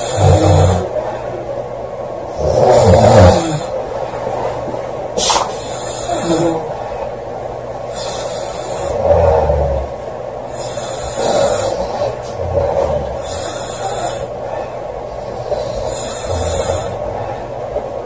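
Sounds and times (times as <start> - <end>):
girl snoring loudly: 0.0 - 1.0, 2.4 - 3.8, 5.8 - 6.8, 8.0 - 14.3, 15.5 - 17.2.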